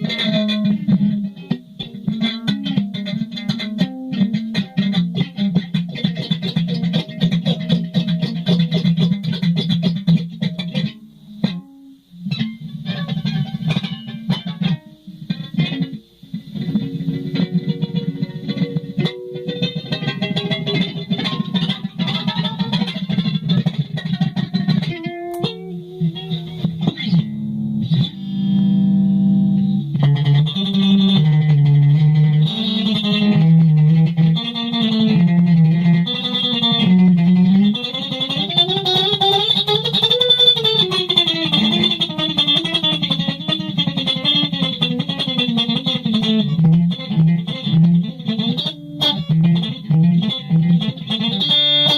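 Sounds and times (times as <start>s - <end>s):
solo guitar with effects: 0.0s - 51.9s.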